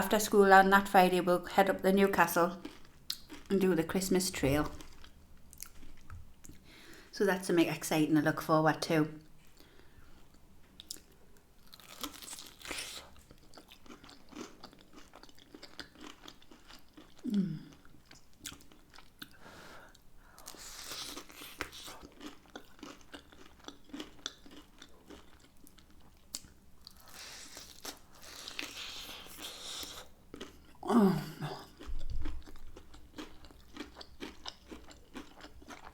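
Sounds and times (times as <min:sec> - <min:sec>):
chewing crunches: 0:02.5 - 0:03.5, 0:09.6 - 0:19.4, 0:20.4 - 0:30.9, 0:31.5 - 0:35.9.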